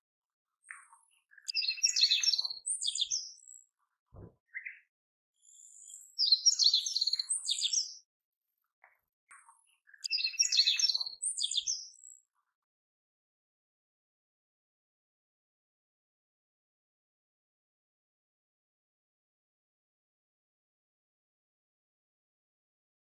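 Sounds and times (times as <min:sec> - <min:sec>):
bird chirping: 0:00.6 - 0:03.7, 0:04.5 - 0:08.0, 0:08.8 - 0:12.3
soft low thump: 0:04.1 - 0:04.4.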